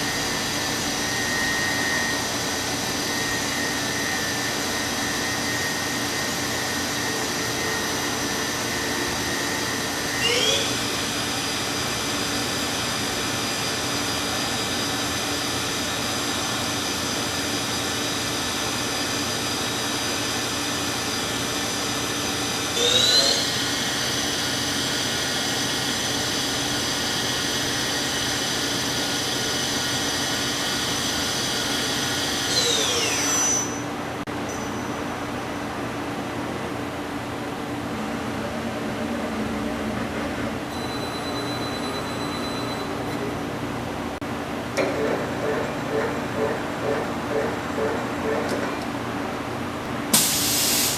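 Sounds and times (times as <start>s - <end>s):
machine spindle whine: 0.0s - 35.9s.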